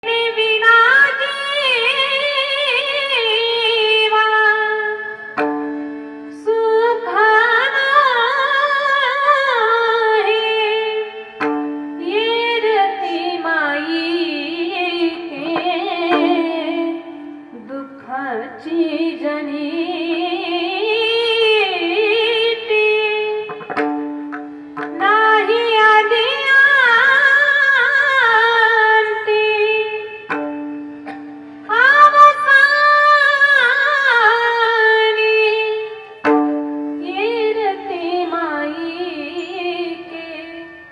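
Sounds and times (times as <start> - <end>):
person singing ornamented melody: 37.0 - 40.9.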